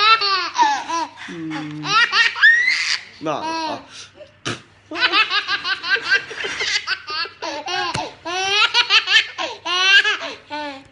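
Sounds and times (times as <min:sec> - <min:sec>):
baby laughing: 0:00.0 - 0:01.2, 0:01.8 - 0:03.8, 0:04.9 - 0:10.8.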